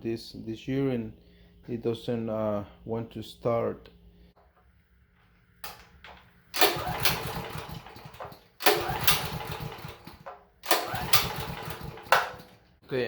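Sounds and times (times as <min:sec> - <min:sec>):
generator engine cranking: 0:05.6 - 0:12.8.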